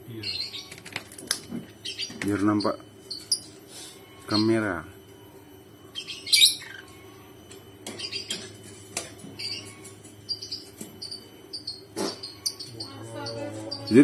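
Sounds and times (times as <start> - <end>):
steady low hum: 0.0 - 14.0
lovebirds chirping: 5.8 - 7.1, 9.4 - 14.0.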